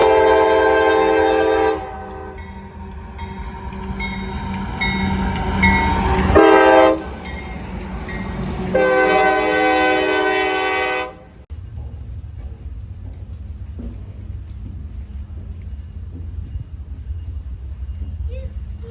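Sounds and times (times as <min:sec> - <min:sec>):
locomotive air horn: 0:00.0 - 0:02.6, 0:06.3 - 0:07.2, 0:08.7 - 0:11.4
train rumble: 0:00.0 - 0:18.9.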